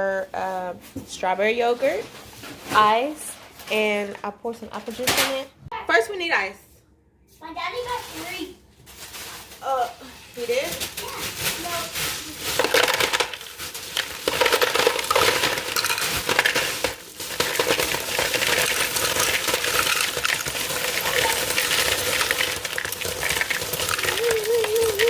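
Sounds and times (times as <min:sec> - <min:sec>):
ice cubes clattering: 0:10.5 - 0:25.0.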